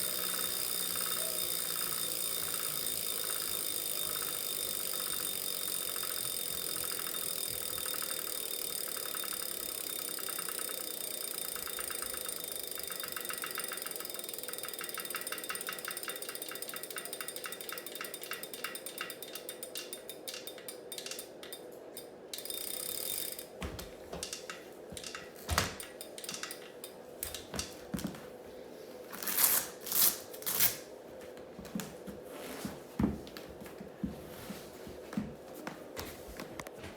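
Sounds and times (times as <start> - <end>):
fast rhythmic clicking: 0.0 - 21.6
bike trainer whine: 0.0 - 28.3.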